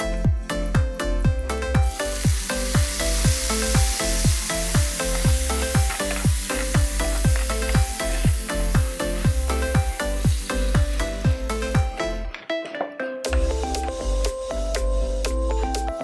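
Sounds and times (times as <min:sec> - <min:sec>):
background music with drum beat: 0:00.0 - 0:16.0
food sizzling in hot oil: 0:01.8 - 0:12.3.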